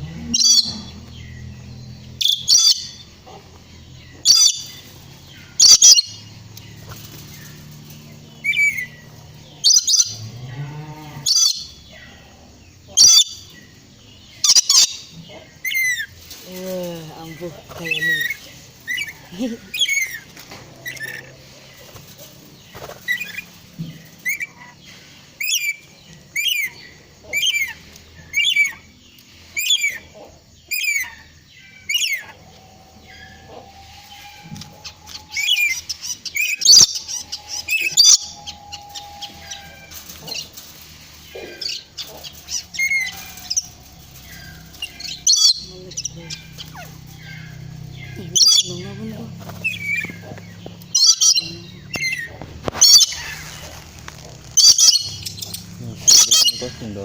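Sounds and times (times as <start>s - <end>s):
parrot chirping: 0.3s - 1.3s, 2.0s - 6.9s, 8.4s - 10.2s, 11.2s - 11.9s, 13.0s - 13.6s, 14.4s - 16.2s, 17.3s - 21.3s, 30.7s - 40.6s, 41.2s - 56.9s.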